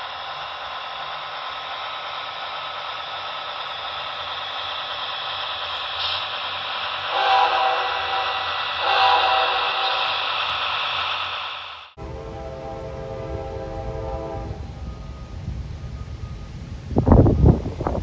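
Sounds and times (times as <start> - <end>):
train hiss: 0.0 - 18.0
locomotive air horn blasts: 7.1 - 10.2, 12.0 - 15.6.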